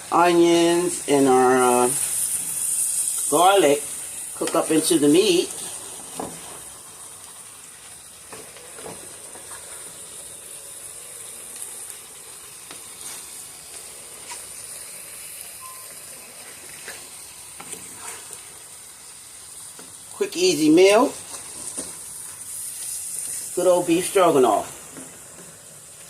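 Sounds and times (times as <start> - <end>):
food sizzling in a pan: 0.0 - 26.0.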